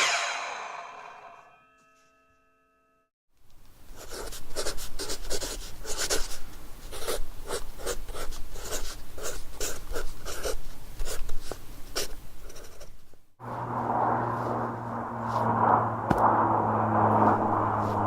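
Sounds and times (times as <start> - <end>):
rough scratching strokes: 0.0 - 1.4.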